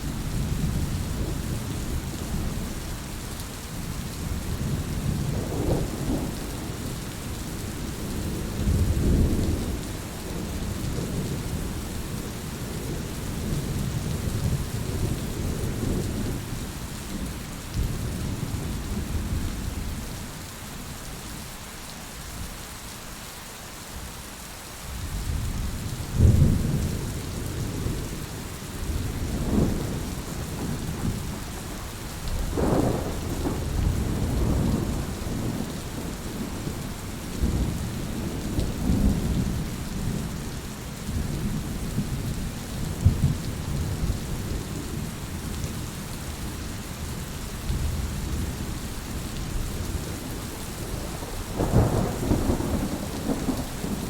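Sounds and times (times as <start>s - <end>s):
heavy rain hissing: 0.0s - 54.0s
rolling thunder rumbling: 28.8s - 40.4s, 49.5s - 54.0s.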